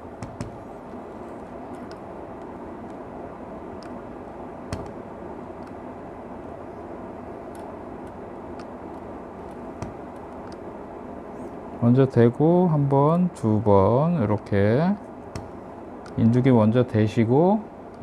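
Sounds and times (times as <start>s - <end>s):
blower-like air noise: 0.0s - 18.0s.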